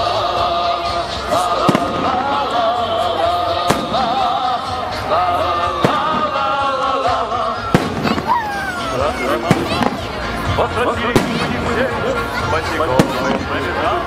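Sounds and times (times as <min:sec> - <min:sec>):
fireworks bangs: 0:01.6 - 0:02.7, 0:03.6 - 0:04.6, 0:05.7 - 0:06.6, 0:07.7 - 0:08.6, 0:09.4 - 0:10.0, 0:11.0 - 0:11.9, 0:12.9 - 0:13.7.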